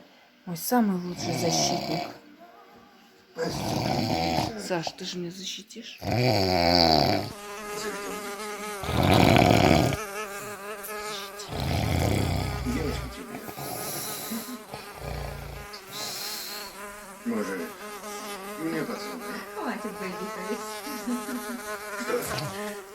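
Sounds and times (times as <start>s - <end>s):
man snoring: 1.2s - 2.2s, 3.4s - 4.7s, 6.0s - 7.4s, 8.6s - 17.4s, 22.0s - 22.8s
housefly buzzing: 6.0s - 22.9s
hissing breath out: 11.5s - 17.0s.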